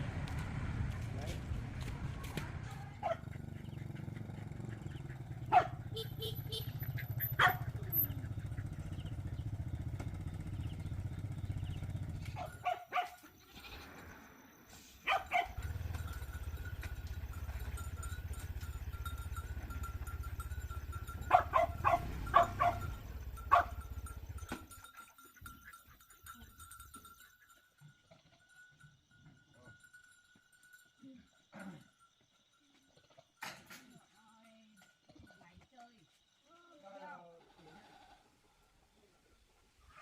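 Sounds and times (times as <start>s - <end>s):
small engine running: 0.0s - 14.2s, 15.1s - 27.2s.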